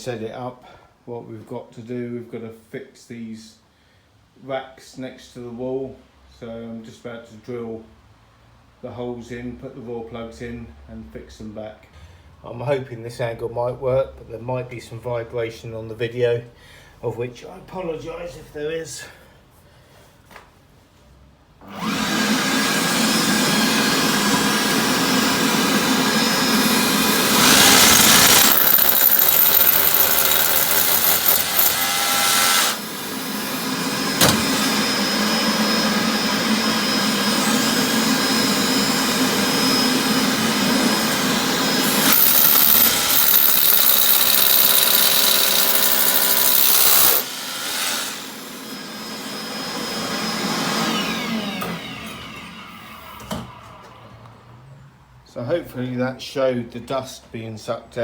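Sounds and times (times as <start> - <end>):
hammer drill boring into wall: 21.6 - 53.9
dust vacuum running: 21.7 - 54.4.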